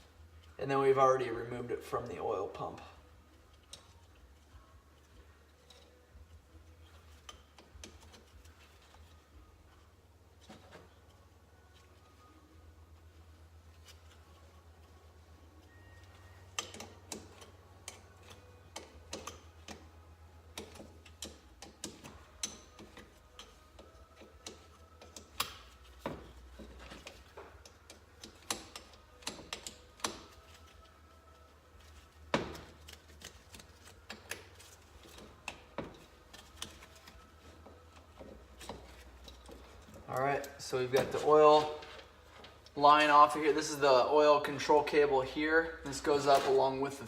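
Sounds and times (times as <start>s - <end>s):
clicks of tools and metal parts: 5.5s - 6.1s, 15.6s - 19.9s, 20.5s - 30.6s, 31.4s - 42.8s.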